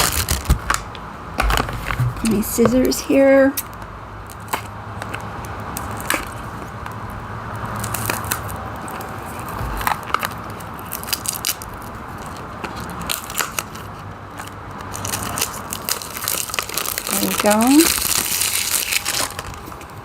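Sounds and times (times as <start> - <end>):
plastic packaging crackling: 0.0 - 3.0, 7.7 - 20.0.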